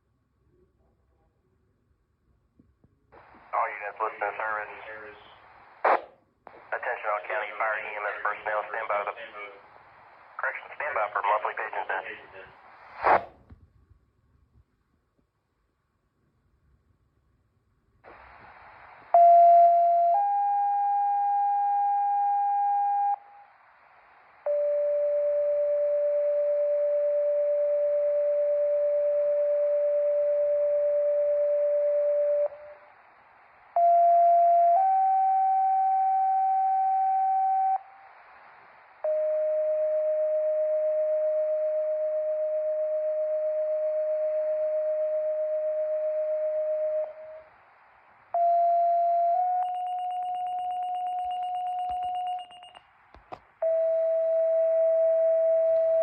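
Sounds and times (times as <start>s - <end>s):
radio static hiss: 3.2s - 13.4s, 18.1s - 19.2s, 23.3s - 24.5s, 32.5s - 33.8s, 37.8s - 39.3s, 46.2s - 48.4s
two-tone paging tones: 48.4s - 52.8s.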